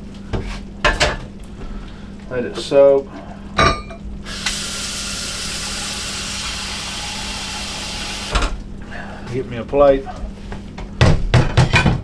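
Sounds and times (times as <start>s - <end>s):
tap running water into sink: 4.3s - 8.6s
tap shutting off clunk: 8.0s - 8.7s.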